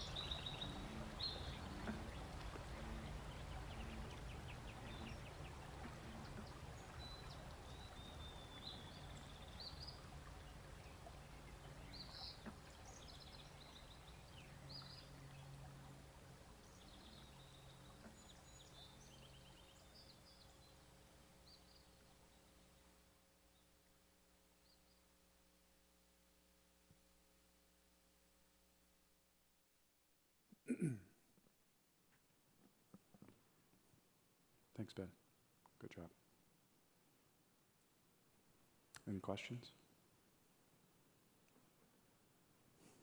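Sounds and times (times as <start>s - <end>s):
bird chirps: 0.0s - 15.6s
steady low background: 0.0s - 43.0s.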